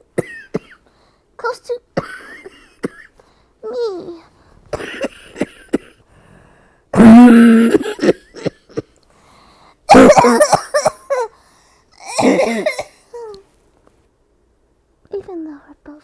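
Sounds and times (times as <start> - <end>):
woman coughing: 0.1 - 0.8, 2.0 - 3.2, 4.7 - 6.0, 7.0 - 9.0, 9.9 - 11.4, 12.0 - 13.3.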